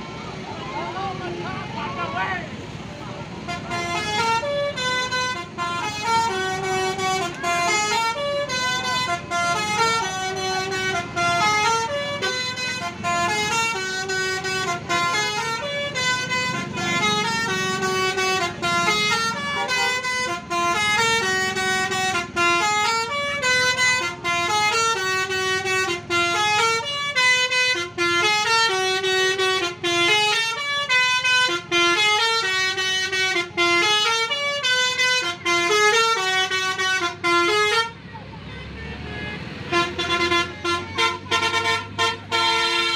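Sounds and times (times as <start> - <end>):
bus musical horn melody: 3.3 - 42.9.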